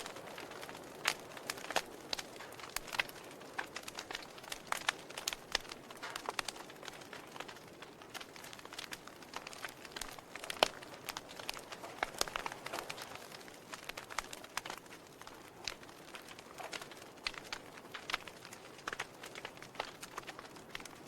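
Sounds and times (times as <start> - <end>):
wood fire crackling: 0.0 - 21.0.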